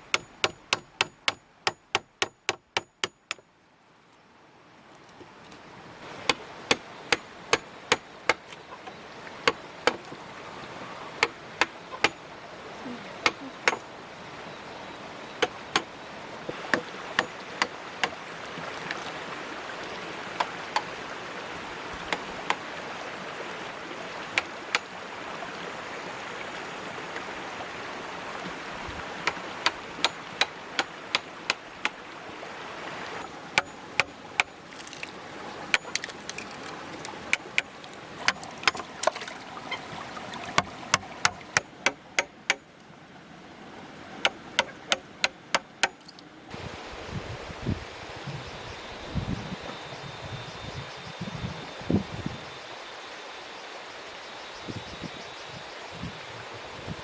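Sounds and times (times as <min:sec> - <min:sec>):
sharp knocks: 0:09.5 - 0:10.1, 0:13.3 - 0:13.8.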